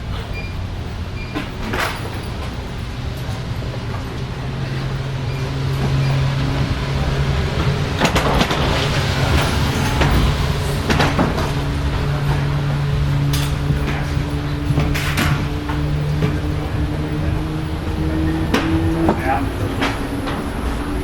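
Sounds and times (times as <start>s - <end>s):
low machine hum: 0.0s - 21.0s
sharp clattering knocks: 5.4s - 20.6s.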